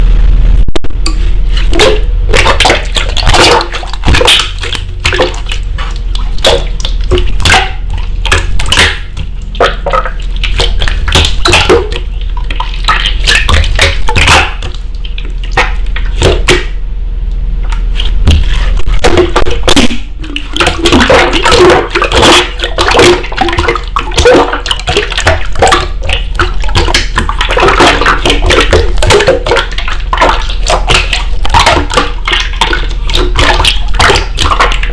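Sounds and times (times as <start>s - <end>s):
hands squishing slime: 17.7s - 34.9s.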